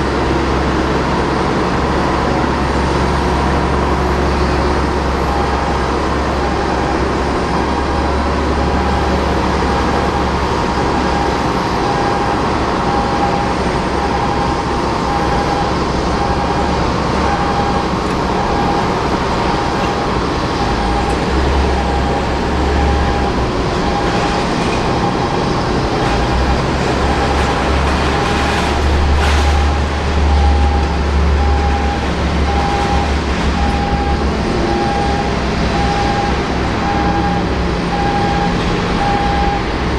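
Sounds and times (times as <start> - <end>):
rumble of apron machinery: 0.0 - 39.9
electronic beep: 29.4 - 39.6.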